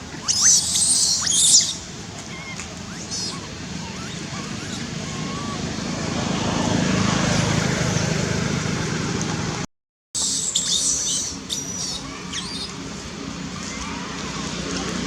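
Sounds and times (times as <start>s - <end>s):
high-pitched chirping calls: 0.0s - 5.8s, 10.2s - 12.9s
outdoor rumble and hiss: 0.0s - 15.0s.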